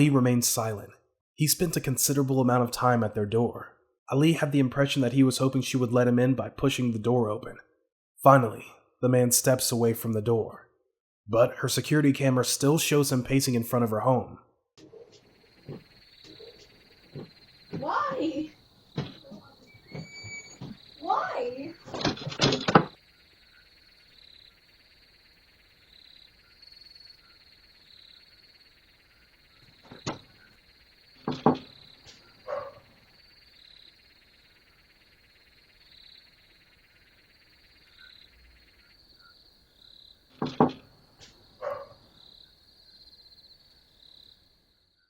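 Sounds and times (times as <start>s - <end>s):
insects chirring: 14.8s - 45.0s.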